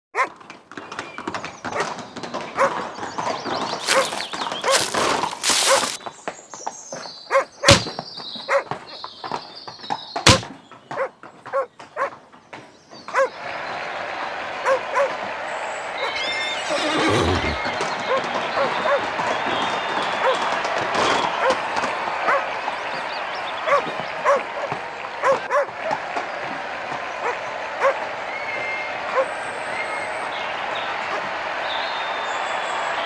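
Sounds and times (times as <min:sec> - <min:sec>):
dog barking: 0:02.6 - 0:02.8, 0:07.3 - 0:07.9, 0:08.5 - 0:08.7, 0:11.0 - 0:12.2, 0:13.1 - 0:13.4, 0:14.6 - 0:15.1, 0:22.3 - 0:22.5, 0:23.7 - 0:25.7
sharp impacts: 0:07.7 - 0:08.0, 0:10.3 - 0:10.5.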